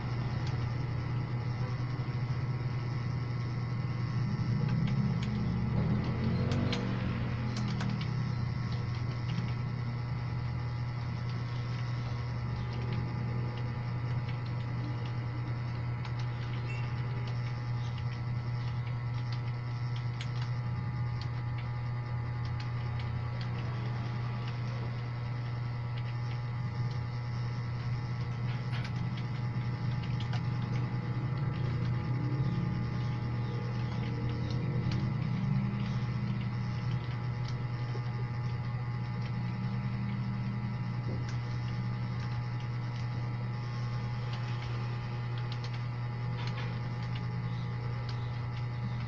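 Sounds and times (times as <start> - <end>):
steady low hum: 0.0 - 49.0
keyboard keys clicking: 4.3 - 9.7, 10.9 - 21.7, 27.8 - 43.1, 43.8 - 49.0.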